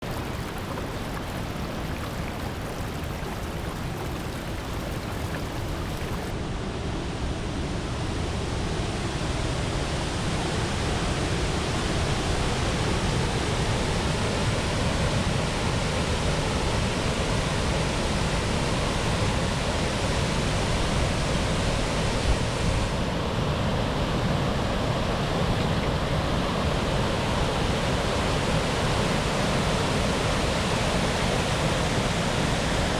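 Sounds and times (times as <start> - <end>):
waterfall roaring: 0.0 - 6.3.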